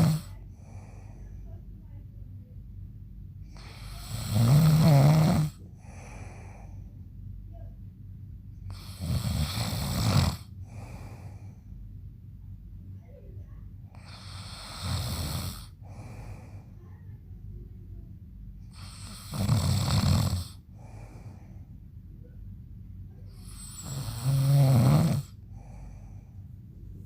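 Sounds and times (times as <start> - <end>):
man snoring loudly: 0.0 - 0.3, 3.6 - 5.6, 8.7 - 11.2, 14.0 - 16.2, 18.7 - 21.0, 23.4 - 25.7
soft breath: 0.0 - 2.0, 5.5 - 7.8, 10.5 - 12.0, 15.6 - 17.2, 20.5 - 24.1, 25.2 - 27.0.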